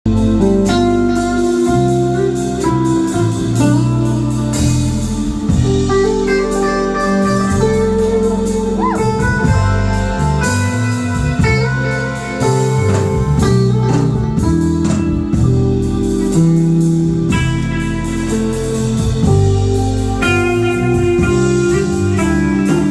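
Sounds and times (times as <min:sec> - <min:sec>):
bass line: 0:00.1 - 0:22.9
electric guitar: 0:00.1 - 0:22.9
bent guitar note: 0:08.4 - 0:11.0.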